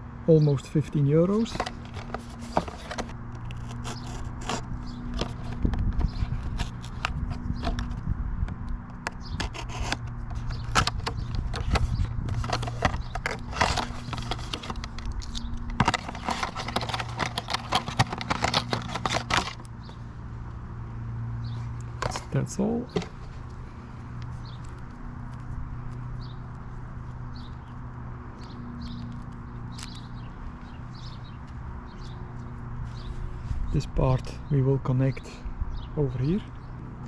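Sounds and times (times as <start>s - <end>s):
cable handling clicks and scrapes: 1.2s - 20.0s, 21.6s - 27.8s, 28.4s - 33.6s.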